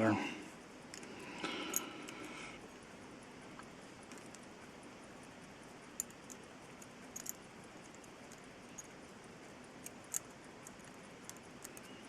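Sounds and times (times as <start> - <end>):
steady hiss: 0.0 - 12.0
metallic clicks of watch parts: 0.9 - 2.4, 5.8 - 12.0.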